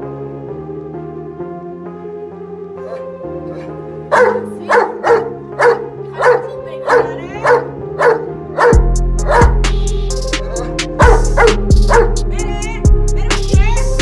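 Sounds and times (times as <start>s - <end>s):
dog barking: 2.8s - 9.7s, 10.4s - 12.2s
background music with bass beat: 8.4s - 14.0s.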